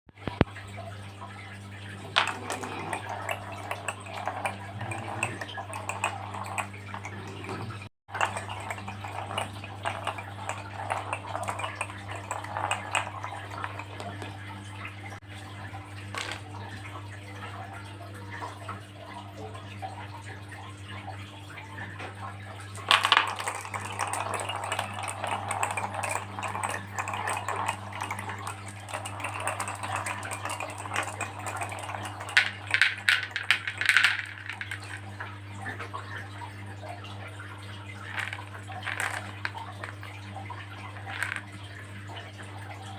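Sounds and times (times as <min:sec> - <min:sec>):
marbles rolling down a track: 0:02.0 - 0:14.3, 0:16.1 - 0:16.5, 0:22.8 - 0:35.2, 0:38.0 - 0:40.2, 0:40.8 - 0:41.6
sharp marble clacks: 0:22.8 - 0:35.1, 0:38.1 - 0:40.2, 0:40.9 - 0:41.5.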